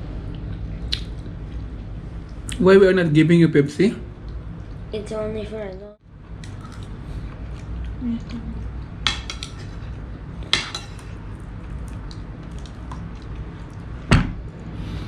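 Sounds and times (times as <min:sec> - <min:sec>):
cutlery clinking on plates: 0:09.1 - 0:09.8, 0:10.5 - 0:11.1.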